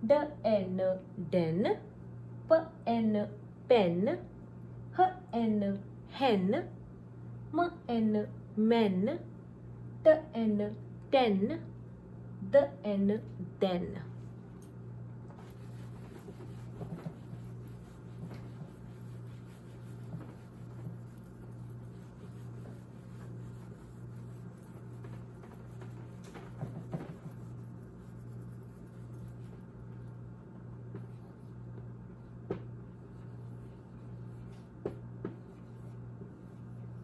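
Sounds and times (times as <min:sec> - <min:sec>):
low hum: 0:00.0 - 0:37.0
faint taps and clicks: 0:30.9 - 0:32.7.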